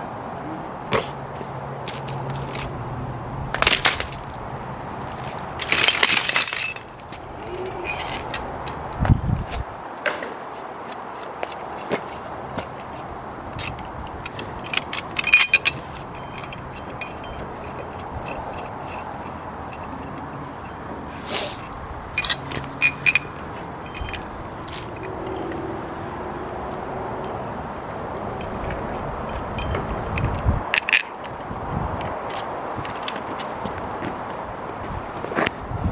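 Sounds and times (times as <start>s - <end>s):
metal parts clinking and rattling: 5.1s - 9.2s, 10.0s - 26.1s, 27.2s - 33.8s
ringing metallic clinks: 5.6s - 9.2s, 10.0s - 26.2s, 27.7s - 31.6s.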